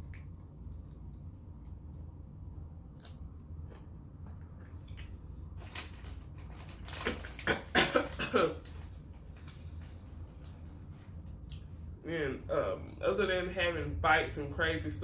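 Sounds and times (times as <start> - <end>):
mouth clicks and smacks: 0.0 - 2.1.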